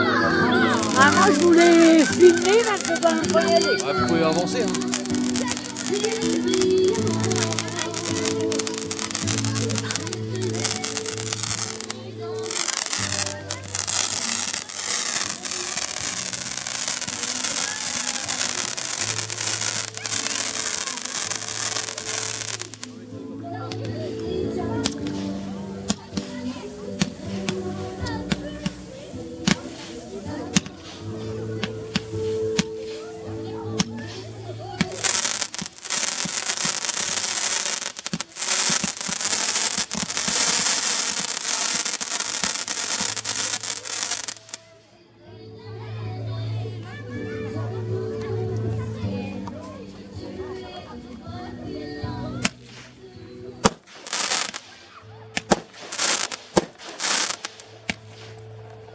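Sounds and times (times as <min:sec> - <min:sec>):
fireworks crackling and fizzing: 0:00.0 - 0:23.0, 0:23.7 - 0:45.0, 0:52.3 - 0:53.0, 0:53.6 - 0:58.9
background music with low notes: 0:00.0 - 0:44.2, 0:45.2 - 0:54.2
sharp pops: 0:24.8 - 0:33.0, 0:33.7 - 0:44.6, 0:53.6 - 0:54.8, 0:55.4 - 0:58.4.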